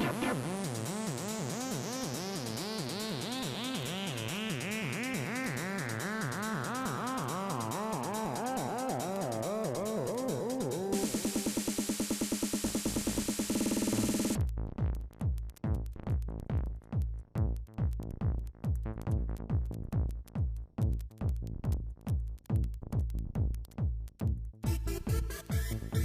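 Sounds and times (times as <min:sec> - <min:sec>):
pounding kick drums and bass: 0:00.0 - 0:26.0
high synth layer: 0:11.0 - 0:14.4.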